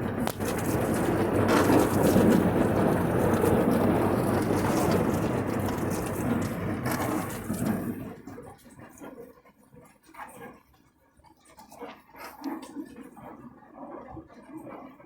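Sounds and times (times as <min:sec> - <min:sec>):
dishwasher water rushing: 0:00.0 - 0:08.2.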